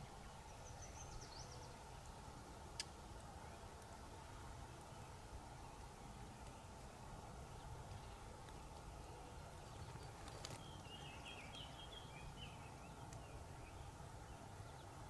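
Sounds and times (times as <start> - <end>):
bird chirping: 0.0 - 2.1, 9.0 - 15.0.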